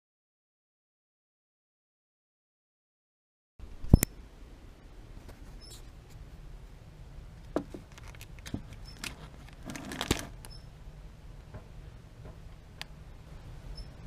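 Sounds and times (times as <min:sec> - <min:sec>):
rustling and clicking: 0:07.4 - 0:10.5.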